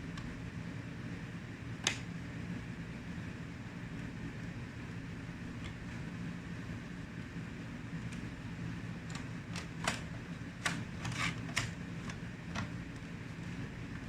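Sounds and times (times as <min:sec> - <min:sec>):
low background hum: 0:00.0 - 0:14.0
laptop parts clicking and tapping: 0:09.1 - 0:12.8.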